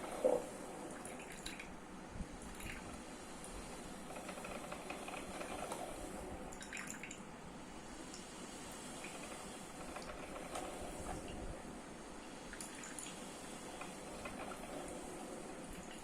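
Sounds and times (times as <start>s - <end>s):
coffee maker hissing: 0.0s - 0.9s, 8.4s - 11.2s, 12.9s - 16.0s.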